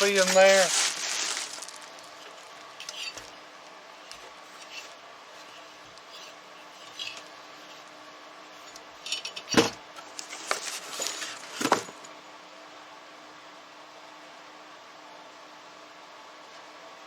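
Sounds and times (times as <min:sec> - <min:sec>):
small hard objects clinking: 0:00.0 - 0:03.4, 0:10.2 - 0:12.0
faint steady hum: 0:00.0 - 0:17.0.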